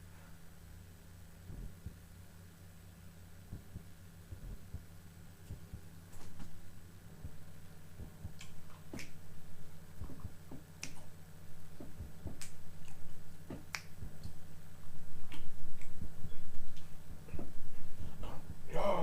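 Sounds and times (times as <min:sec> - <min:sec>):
steady low hum: 0:00.0 - 0:19.0
chewing with wet mouth clicks: 0:08.0 - 0:09.2, 0:10.0 - 0:11.2, 0:11.8 - 0:14.4, 0:15.2 - 0:17.4
lip smacks: 0:08.0 - 0:09.2, 0:09.9 - 0:14.5, 0:15.2 - 0:18.5.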